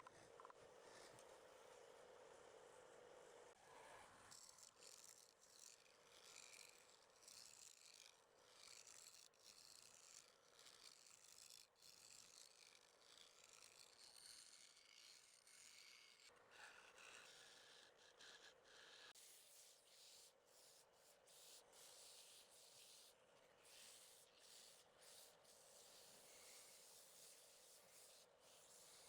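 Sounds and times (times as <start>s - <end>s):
faint rubbing and scraping: 12.9s - 29.0s.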